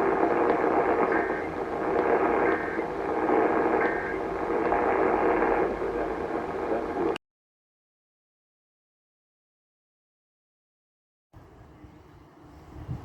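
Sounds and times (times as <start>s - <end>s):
buzzy data bursts over radio: 0.0s - 7.2s
radio static hiss: 0.0s - 7.2s.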